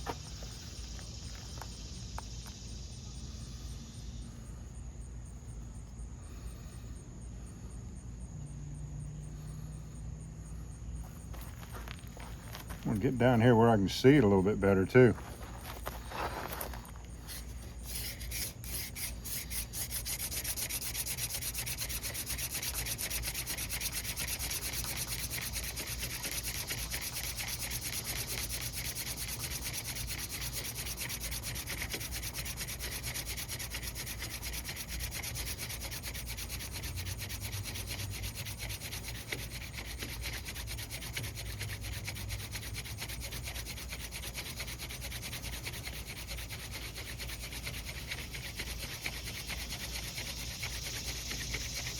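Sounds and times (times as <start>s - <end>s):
hand drill rubbing on wood: 11.0s - 51.9s.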